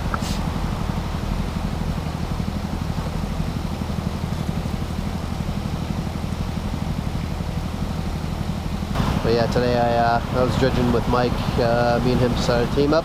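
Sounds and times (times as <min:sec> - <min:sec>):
small gasoline engine running: 0:00.0 - 0:13.0.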